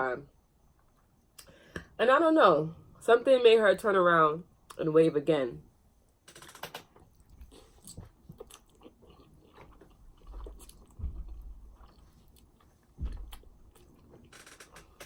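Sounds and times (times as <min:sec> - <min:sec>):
person chewing food: 0:07.0 - 0:14.3.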